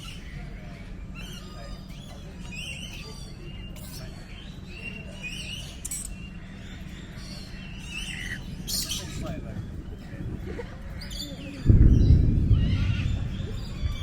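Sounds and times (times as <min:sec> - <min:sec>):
birds chirping and calling: 0:00.0 - 0:14.0
steady low rumble: 0:08.5 - 0:14.0.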